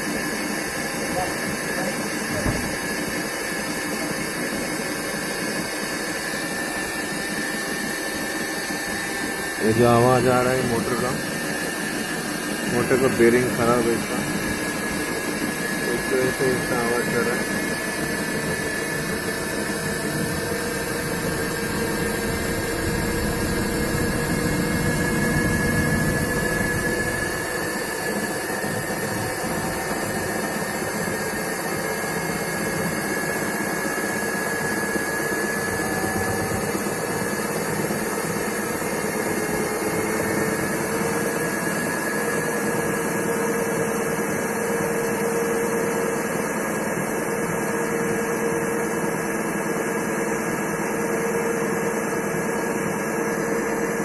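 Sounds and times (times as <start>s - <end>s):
washing machine motor humming: 4.5s - 42.4s.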